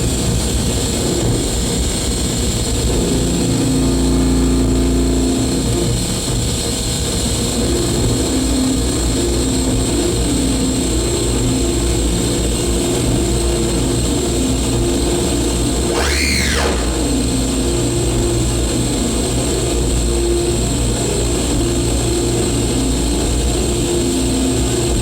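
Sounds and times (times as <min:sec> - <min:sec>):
harsh electronic noise music: 0:00.0 - 0:25.0
low droning tones: 0:00.0 - 0:25.0
high whines: 0:02.8 - 0:06.8, 0:07.4 - 0:25.0
rising and falling sweep: 0:15.8 - 0:18.4.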